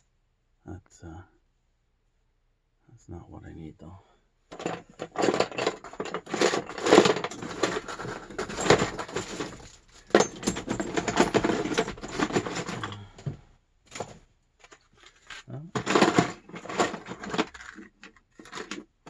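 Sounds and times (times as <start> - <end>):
hands rummaging through parts: 4.5 - 19.0.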